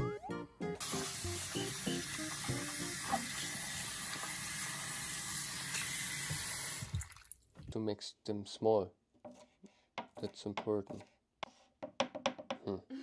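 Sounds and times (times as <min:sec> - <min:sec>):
soft plucked background music: 0:00.0 - 0:03.7
steady kitchen hiss: 0:00.8 - 0:06.9.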